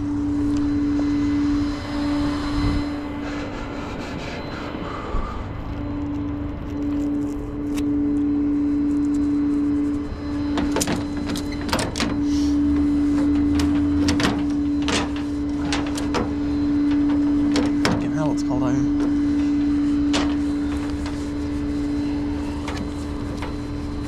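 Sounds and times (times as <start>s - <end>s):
steady mechanical whine: 0.0s - 24.0s
sharp metallic clanks and knocks: 13.1s - 18.2s.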